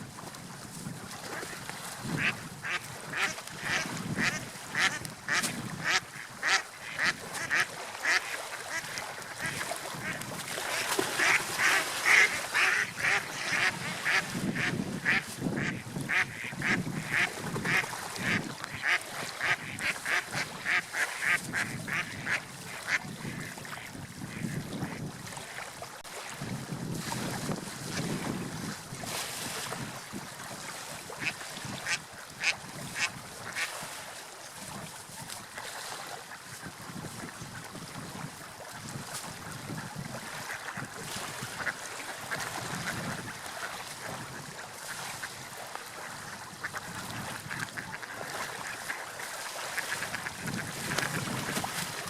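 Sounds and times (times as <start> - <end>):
rushing water: 0.0 - 52.0
wind: 0.0 - 52.0
waterfowl calling: 2.2 - 24.6.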